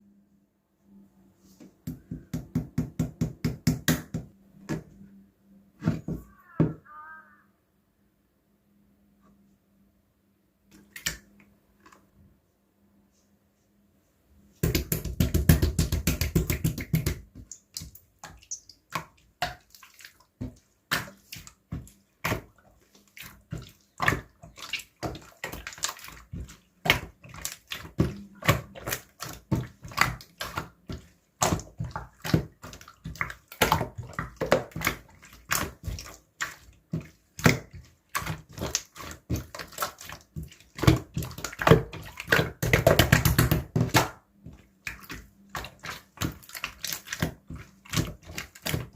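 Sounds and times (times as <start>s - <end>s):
slime squishing: 14.6s - 48.9s.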